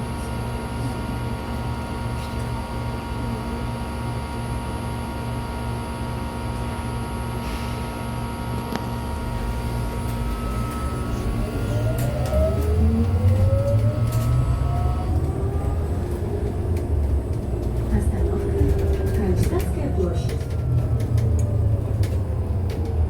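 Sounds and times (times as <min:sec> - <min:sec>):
bus cabin low rumble: 0:00.0 - 0:23.0
electric whine tones: 0:08.7 - 0:15.7.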